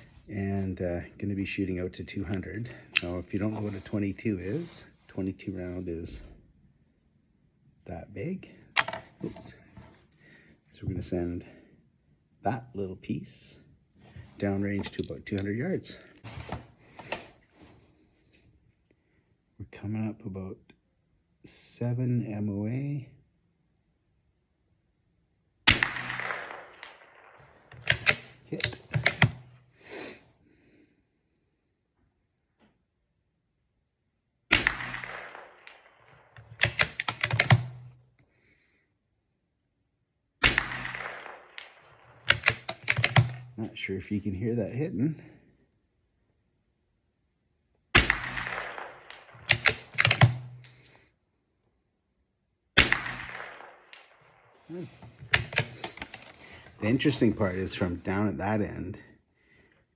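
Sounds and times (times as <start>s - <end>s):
rifle bolt clicking: 8.8s - 9.5s, 27.8s - 29.5s, 36.4s - 37.8s, 42.3s - 43.5s, 48.2s - 50.8s, 55.2s - 56.4s
bullet striking steel target: 25.7s - 27.0s, 34.5s - 35.9s, 40.4s - 41.8s, 48.0s - 50.8s, 52.8s - 54.1s
rifle shot with echo: 25.7s - 29.6s, 34.5s - 38.0s, 40.4s - 43.6s, 47.9s - 50.7s, 52.8s - 56.4s.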